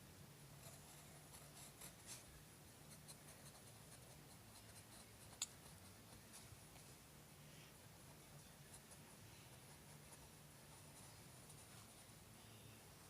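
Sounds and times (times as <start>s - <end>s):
drawing tool scratching on paper: 0.6s - 6.6s.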